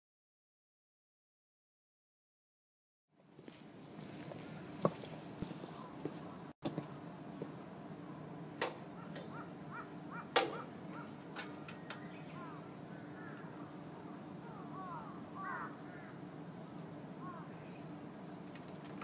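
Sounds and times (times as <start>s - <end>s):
faint low hum: 3.2s - 19.0s
birds calling: 7.4s - 18.1s.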